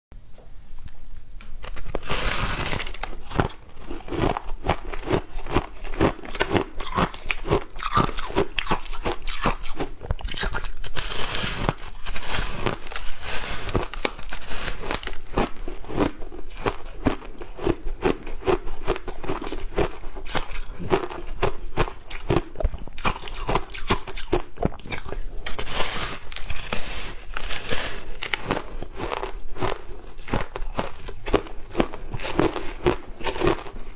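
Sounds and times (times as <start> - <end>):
ice being crunched: 1.6 - 9.5, 10.4 - 17.2, 23.1 - 33.8.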